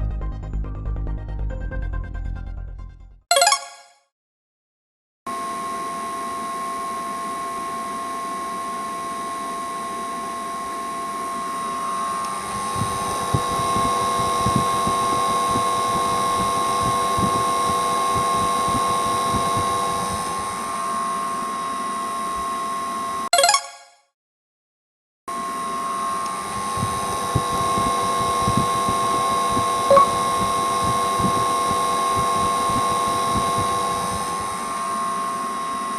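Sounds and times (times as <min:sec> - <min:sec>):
air conditioner whine: 0:05.3 - 0:23.3, 0:25.3 - 0:35.9.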